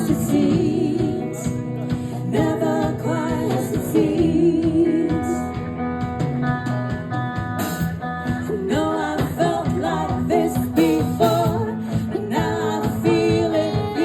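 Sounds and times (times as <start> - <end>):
person singing: 0.0 - 5.6, 8.4 - 14.0
guitar: 0.0 - 14.0.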